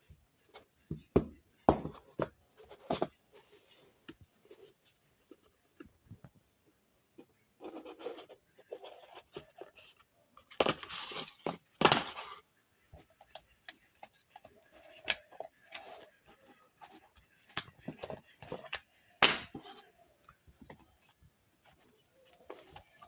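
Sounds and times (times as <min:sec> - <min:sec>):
packaging rustling and scraping: 0:10.6 - 0:12.4, 0:14.0 - 0:17.2.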